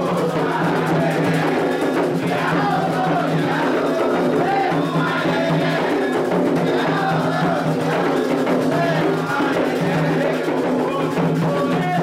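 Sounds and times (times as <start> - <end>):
hand drums playing: 0.0 - 12.0
voices singing: 0.0 - 12.0.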